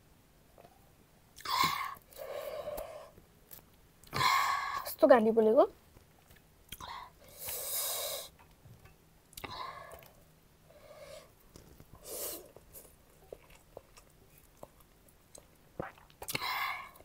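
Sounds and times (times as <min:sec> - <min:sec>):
soft chewing clicks: 0:12.6 - 0:16.4.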